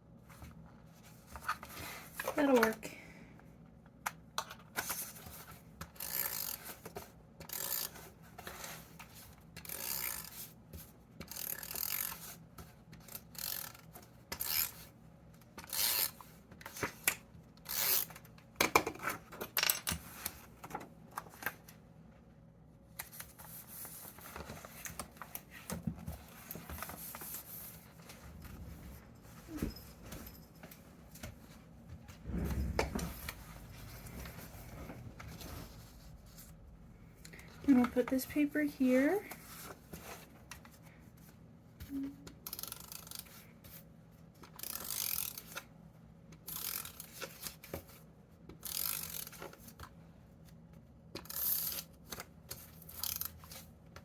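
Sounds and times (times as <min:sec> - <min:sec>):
paper rustling and scraping: 0:23.1 - 0:36.6
low thump: 0:32.2 - 0:34.4
soft paper rubbing: 0:32.2 - 0:36.8.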